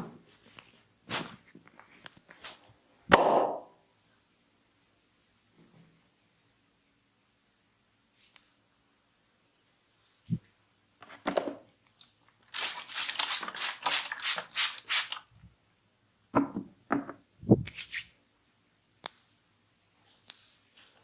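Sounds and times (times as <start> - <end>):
sharp massage slaps: 3.1 - 3.7.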